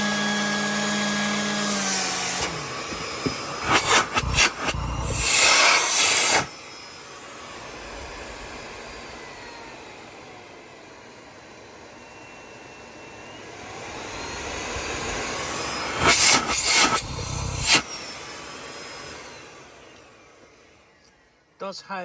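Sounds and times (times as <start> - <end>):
vacuum cleaner running: 0.0 - 21.9
loud rushing bursts: 3.6 - 6.5, 16.0 - 17.8.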